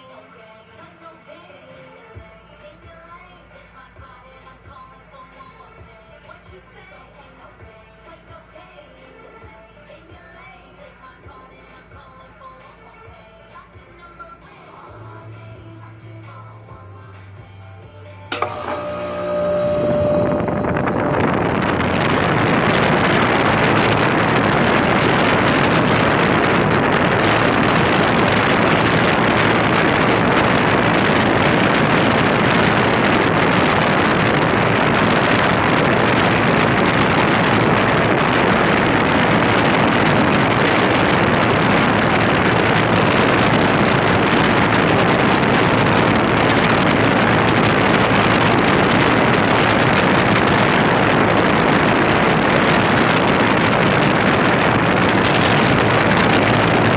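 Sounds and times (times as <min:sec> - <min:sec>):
heat pump whoosh and hum: 0:12.8 - 0:56.9.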